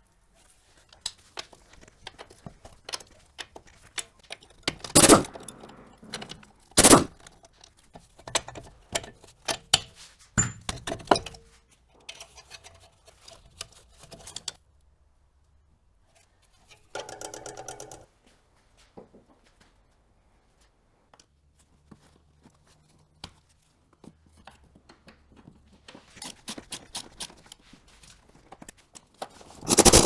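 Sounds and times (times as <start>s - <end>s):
loud short noise bursts: 5.0s - 5.4s, 6.8s - 7.1s, 29.7s - 30.0s
short buzzing rattle: 5.0s - 5.4s, 6.8s - 7.1s, 29.7s - 30.0s.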